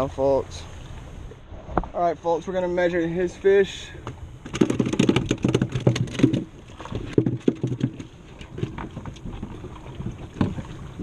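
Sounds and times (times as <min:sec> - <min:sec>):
knocks and taps on a kayak: 0:04.0 - 0:09.7, 0:10.3 - 0:10.7.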